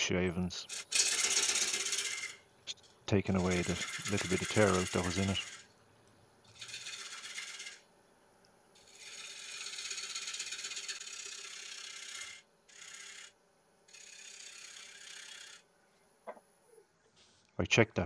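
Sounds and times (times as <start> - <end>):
lathe humming: 0.7 - 2.4, 3.3 - 5.7, 6.5 - 7.8, 8.8 - 15.6
gouge scraping spinning wood: 0.7 - 5.7, 6.5 - 7.9, 8.8 - 15.7.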